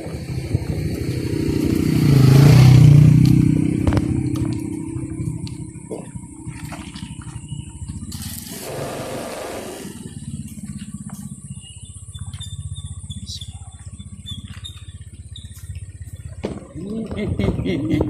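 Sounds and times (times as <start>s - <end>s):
motorcycle engine at low revs: 0.0s - 18.0s.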